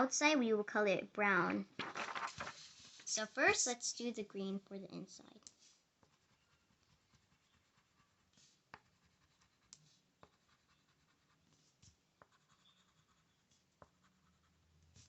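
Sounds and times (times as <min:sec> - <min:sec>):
pencil scratching on paper: 0:05.5 - 0:15.0.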